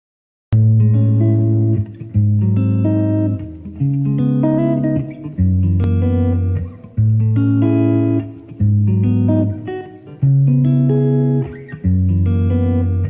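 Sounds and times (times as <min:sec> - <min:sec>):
bass line: 0:00.6 - 0:09.6
plucked guitar notes: 0:00.6 - 0:13.0.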